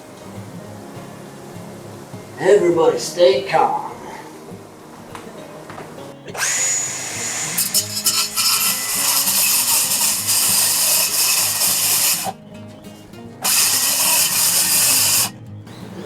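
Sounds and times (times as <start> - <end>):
power saw whining and cutting: 5.1 - 15.5.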